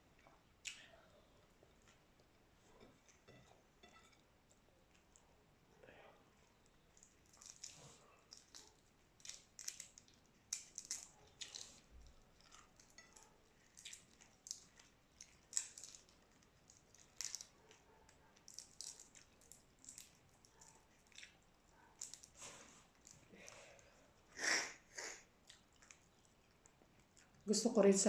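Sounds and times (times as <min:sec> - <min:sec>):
shrimp shells crackling while chewing: 0:06.5 - 0:24.4, 0:25.2 - 0:27.5.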